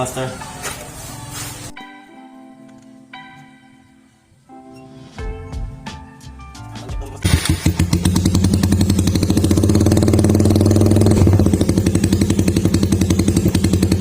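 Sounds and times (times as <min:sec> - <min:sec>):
motorcycle engine idling: 0:07.3 - 0:14.0.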